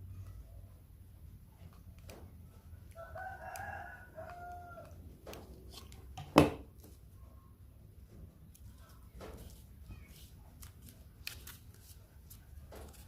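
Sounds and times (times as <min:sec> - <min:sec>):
rooster crowing: 0:03.0 - 0:05.0.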